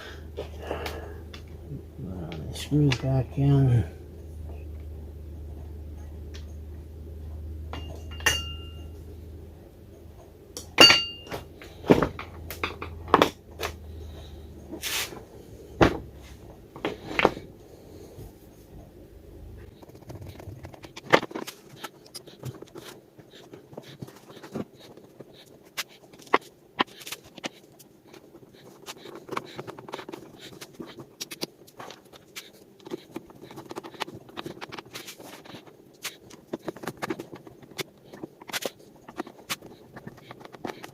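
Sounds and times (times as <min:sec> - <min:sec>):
low hum: 0:00.0 - 0:20.8.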